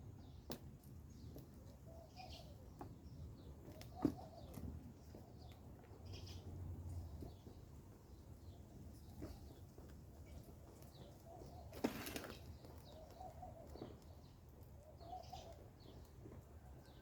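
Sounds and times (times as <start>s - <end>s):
faint bird calls: 3.6s - 6.5s, 11.0s - 14.2s, 14.8s - 16.0s.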